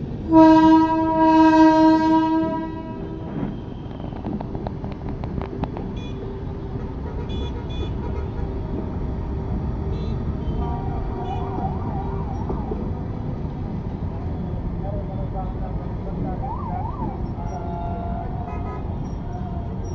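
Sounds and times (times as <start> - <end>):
road traffic noise: 0.0 - 19.9
warbling siren tone: 11.2 - 13.0.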